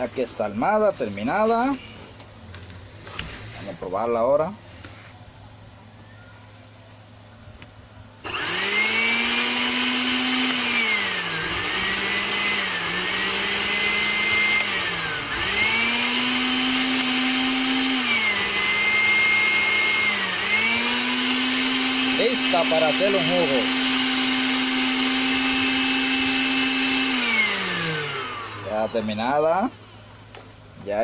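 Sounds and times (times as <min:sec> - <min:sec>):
blender motor whining: 0:08.2 - 0:30.1.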